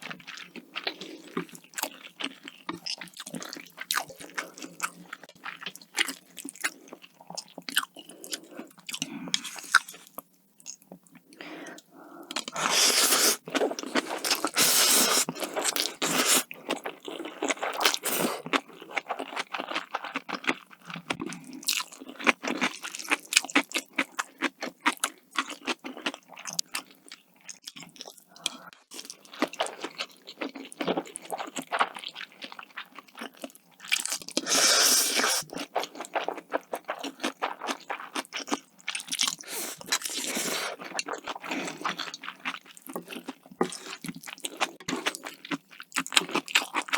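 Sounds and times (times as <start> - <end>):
crunchy bites and wet chewing: 12.3 - 46.9.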